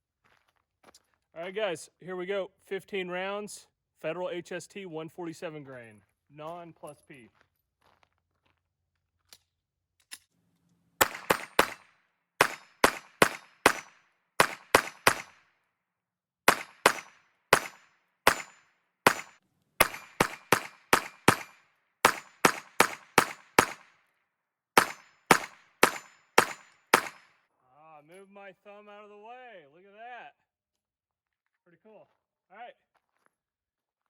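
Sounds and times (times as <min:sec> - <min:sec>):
pistol gunshots: 0:11.0 - 0:15.4, 0:16.5 - 0:23.9, 0:24.8 - 0:27.3.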